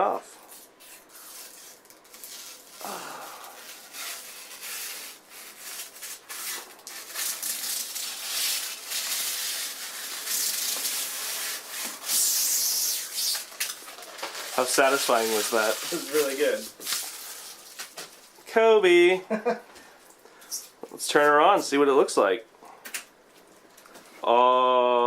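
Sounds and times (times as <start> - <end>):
plastic film peeling: 0.5 - 18.4.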